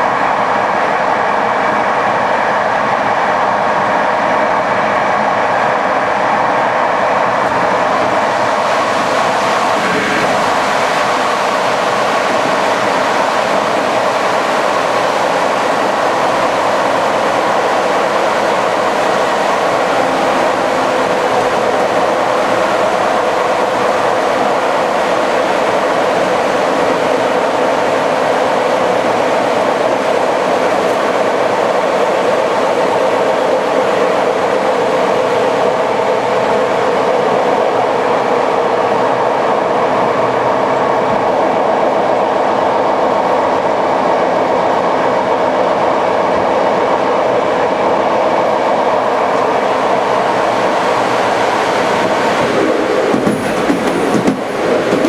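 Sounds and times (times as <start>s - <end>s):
train wheels rumbling on rail: 0.0s - 55.0s.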